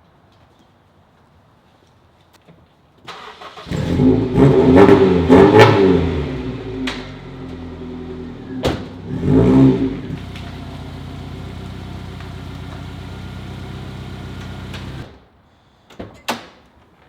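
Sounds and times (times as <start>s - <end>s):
car engine idling: 6.2s - 15.2s.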